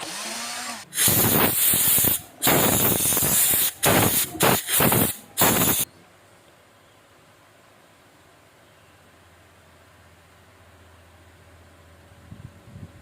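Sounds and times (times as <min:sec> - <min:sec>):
hissing spray bursts: 0:00.0 - 0:05.9.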